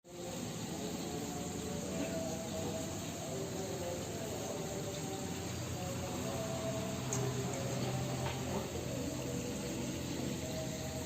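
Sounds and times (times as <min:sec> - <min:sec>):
insects chirping: 0:00.0 - 0:11.0.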